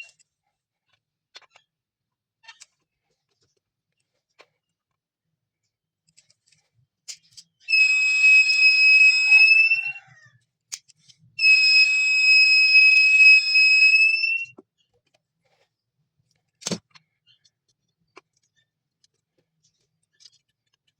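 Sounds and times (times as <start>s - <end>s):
high-pitched alarm beep: 7.7s - 10.0s, 11.4s - 14.5s.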